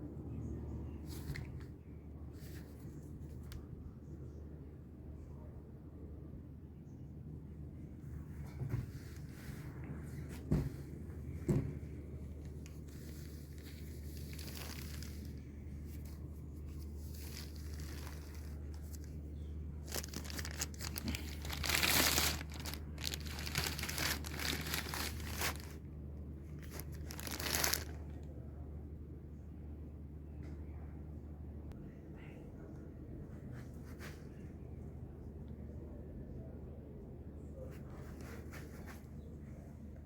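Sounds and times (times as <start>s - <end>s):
steady low hum: 0.0s - 40.0s
packaging crinkling and tearing: 12.6s - 15.4s, 17.0s - 19.2s, 19.8s - 25.8s, 26.6s - 28.2s.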